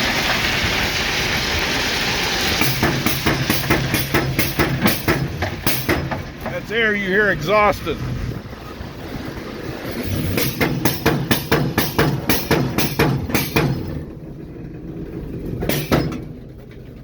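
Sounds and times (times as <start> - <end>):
diesel locomotive engine running: 0.0 - 17.0
sharp metallic knocks: 2.6 - 6.6, 9.9 - 14.2, 15.6 - 16.5.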